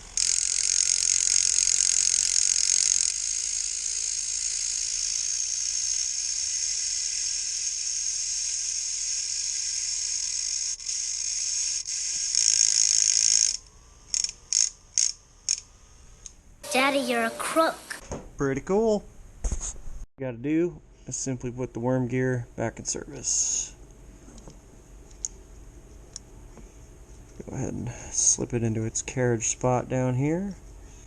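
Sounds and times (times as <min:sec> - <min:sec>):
rotary tool high-pitched whir: 0:00.0 - 0:15.7.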